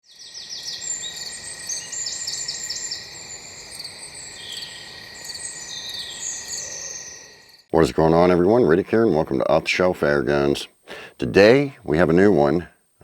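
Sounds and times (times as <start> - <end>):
bird chirping: 0.0 - 7.9
insect drone: 0.0 - 13.0.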